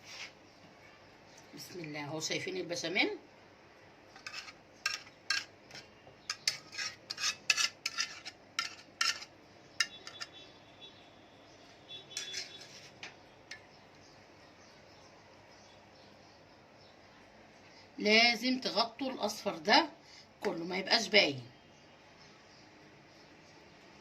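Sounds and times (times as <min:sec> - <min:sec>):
spoon scraping cookware: 0:04.1 - 0:10.4, 0:12.1 - 0:13.7.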